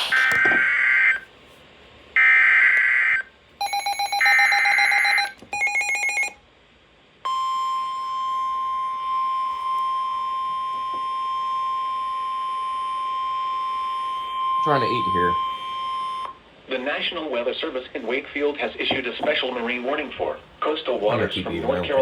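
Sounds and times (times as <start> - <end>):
steady warning alarm tone: 2.2 - 6.4, 7.3 - 16.4.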